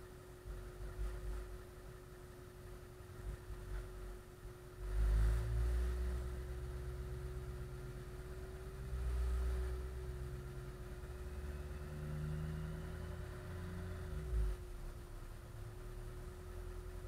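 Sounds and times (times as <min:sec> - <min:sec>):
diesel engine idling: 0:00.0 - 0:05.0
steady engine whine: 0:00.0 - 0:17.0.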